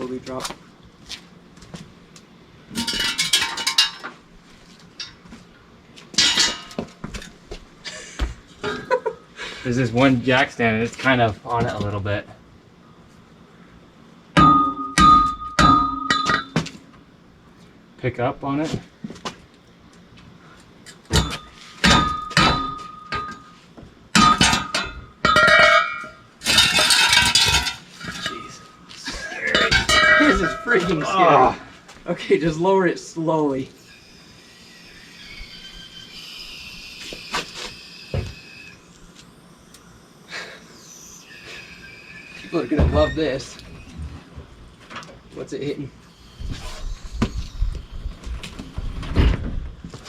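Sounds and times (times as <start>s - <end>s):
metal clanking and rattling: 2.7s - 4.2s, 6.2s - 7.3s, 24.2s - 28.5s.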